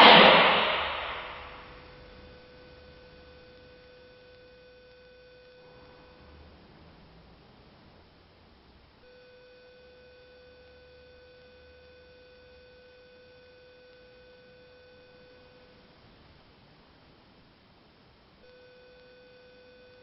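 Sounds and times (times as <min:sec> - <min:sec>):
buzzy electronic tone: 0:00.0 - 0:07.2
low hum: 0:00.0 - 0:08.7.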